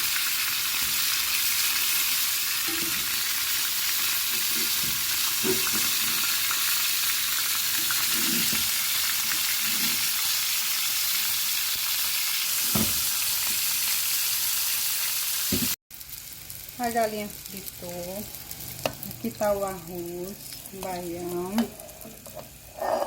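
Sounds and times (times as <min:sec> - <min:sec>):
chicken sizzling in hot oil: 0:00.0 - 0:23.0.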